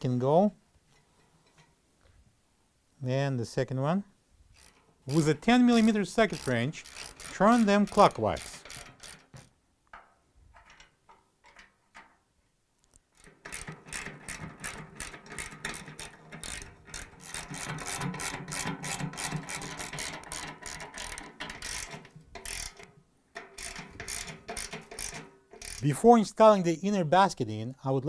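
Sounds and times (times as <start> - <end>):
ratchet wrench clicking: 4.5 - 9.5, 13.2 - 26.0.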